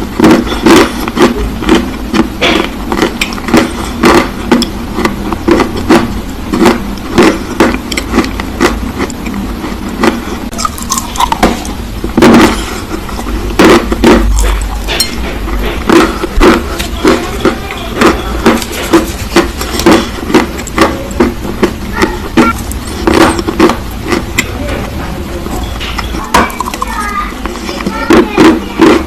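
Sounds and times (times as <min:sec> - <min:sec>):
clay crunching when chewed: 0:00.2 - 0:24.6.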